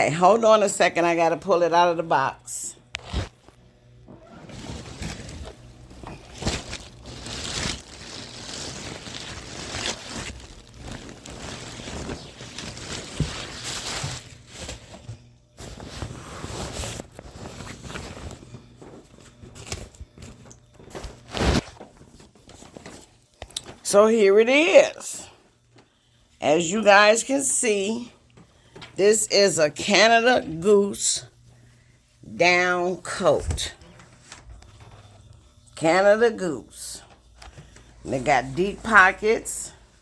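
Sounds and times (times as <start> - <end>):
packaging rustling and crinkling: 4.2 - 23.8.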